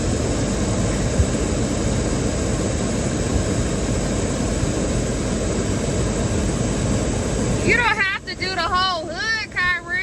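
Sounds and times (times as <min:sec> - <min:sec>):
rushing air: 0:00.0 - 0:07.8.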